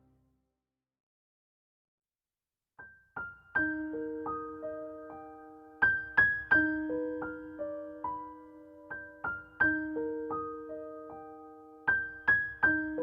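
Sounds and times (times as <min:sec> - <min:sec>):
slow solo piano piece: 0:02.8 - 0:13.0.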